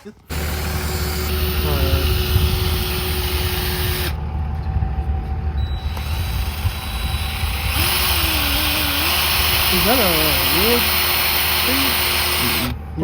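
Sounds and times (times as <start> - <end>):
electric drill whining: 0.3 - 4.2, 5.6 - 12.8
low rumble: 1.1 - 9.7.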